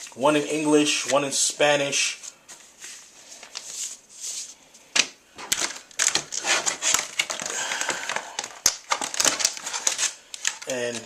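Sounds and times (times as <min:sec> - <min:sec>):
packaging rustling and crinkling: 0:02.2 - 0:04.6, 0:05.4 - 0:11.0.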